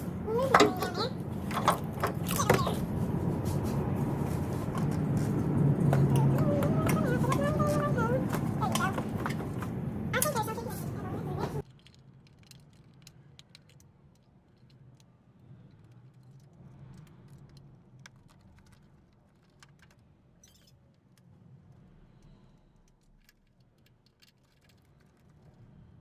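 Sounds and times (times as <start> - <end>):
small clicks and light rattles: 11.6 - 25.7.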